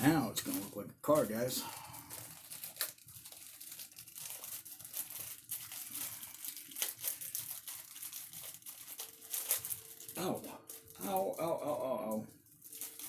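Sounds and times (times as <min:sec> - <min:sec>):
plastic bag crinkling: 0:00.0 - 0:13.0
plastic tearing: 0:00.0 - 0:13.0.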